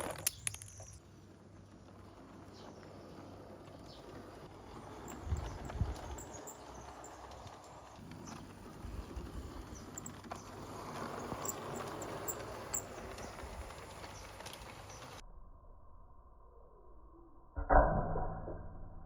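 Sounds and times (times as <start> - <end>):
marbles rolling down a track: 1.8 - 15.2.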